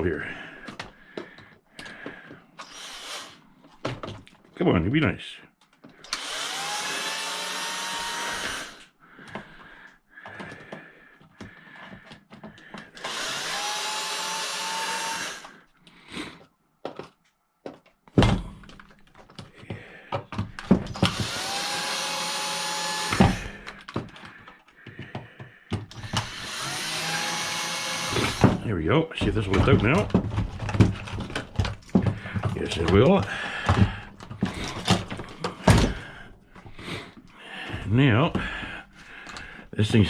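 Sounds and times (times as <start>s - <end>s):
cordless drill motor whining: 2.6s - 3.4s, 6.0s - 8.9s, 12.9s - 15.6s, 20.9s - 24.0s, 25.9s - 28.6s
drill clicks: 2.6s - 4.1s, 5.7s - 8.9s, 12.6s - 15.6s, 20.5s - 24.4s, 25.9s - 28.6s
loose screws and plastic rattling: 20.2s - 39.6s.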